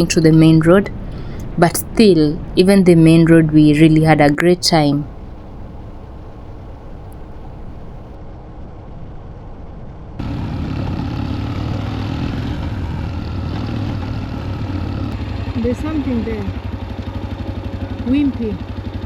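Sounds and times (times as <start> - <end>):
motorcycle engine: 0.0 - 8.2, 10.2 - 19.0
road noise: 0.0 - 8.2, 10.2 - 18.8.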